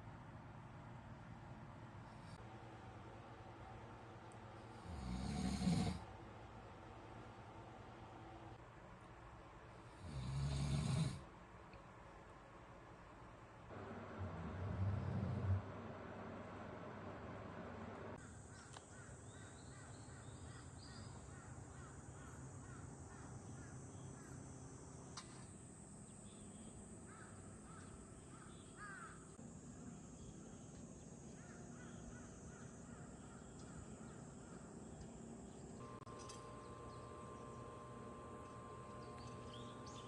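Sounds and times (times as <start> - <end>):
crows cawing: 18.2 - 24.3, 27.1 - 29.3
birds calling: 31.3 - 40.0
thin high-pitched whine: 35.7 - 40.0.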